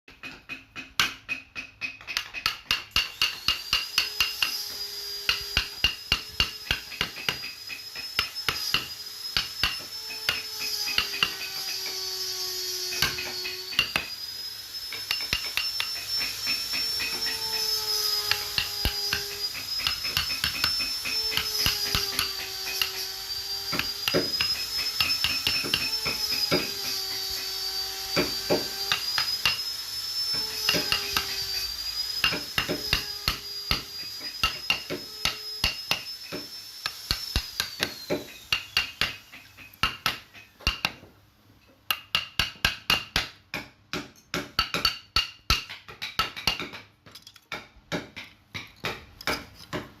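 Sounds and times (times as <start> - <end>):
hand tools tapping wood: 0.1 - 4.6, 5.2 - 11.7, 15.0 - 23.1, 23.7 - 27.3, 30.3 - 31.4, 32.2 - 41.1, 41.7 - 50.0.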